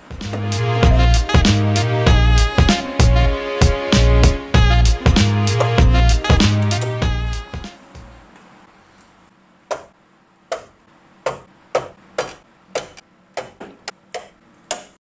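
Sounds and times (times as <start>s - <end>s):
background music: 0.0s - 8.2s.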